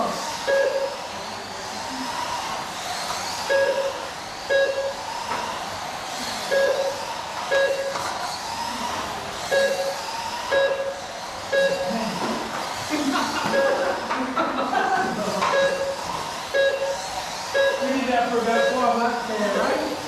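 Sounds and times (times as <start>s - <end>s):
rc truck electric motors whining: 0.0s - 20.0s
short electronic beeps: 0.5s - 1.0s, 3.5s - 5.1s, 6.5s - 8.0s, 9.5s - 11.9s, 15.5s - 17.0s, 17.6s - 19.0s.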